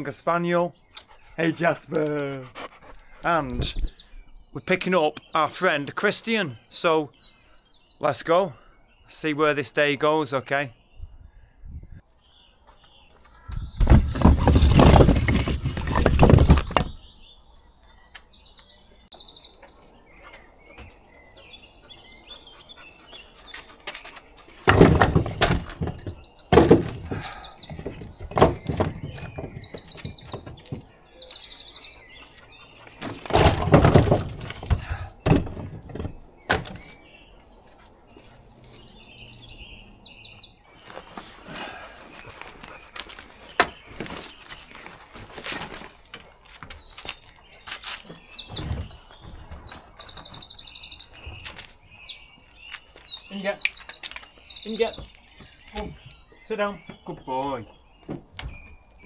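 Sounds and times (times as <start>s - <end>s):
songbirds trilling: 0.0s - 59.0s
knocking and handling noise: 13.5s - 17.0s, 23.9s - 31.0s, 33.0s - 36.9s.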